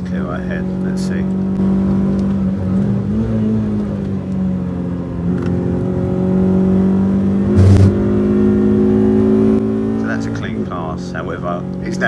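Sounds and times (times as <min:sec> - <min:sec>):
car engine at high revs: 0:00.6 - 0:10.7
brief thump: 0:07.6 - 0:08.0.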